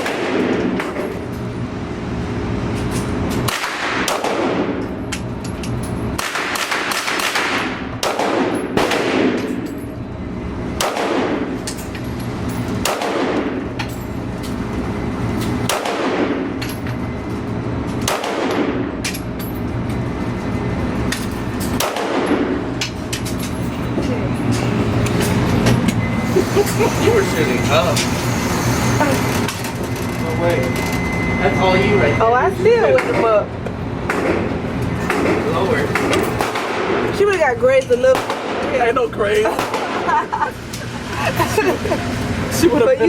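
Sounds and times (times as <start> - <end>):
gunshots with long echo: 6.2 - 9.4, 10.8 - 11.6, 12.8 - 13.6, 15.7 - 16.5, 21.8 - 22.6, 35.1 - 37.1
low hum: 7.5 - 43.0.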